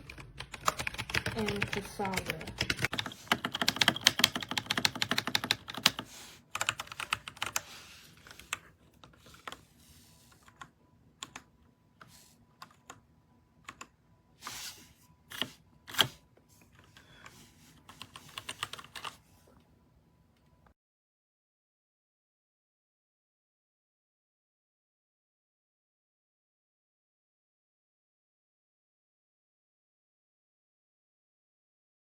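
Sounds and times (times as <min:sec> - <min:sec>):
mechanical keyboard typing: 0:00.0 - 0:09.6, 0:10.4 - 0:11.5, 0:13.6 - 0:13.9, 0:17.9 - 0:19.2.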